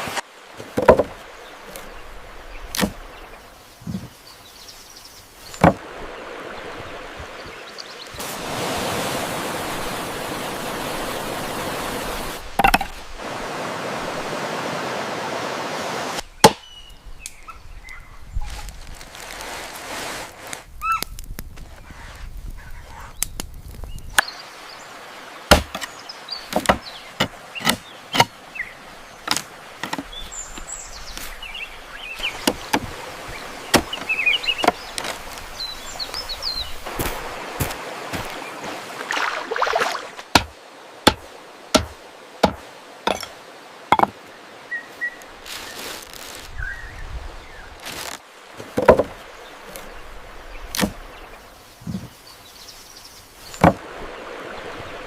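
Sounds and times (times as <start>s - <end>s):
small birds chirping: 1.2s - 8.2s, 16.3s - 18.7s, 25.8s - 36.8s, 49.4s - 54.7s
sharp chopping strikes: 25.5s - 25.9s, 40.3s - 43.3s.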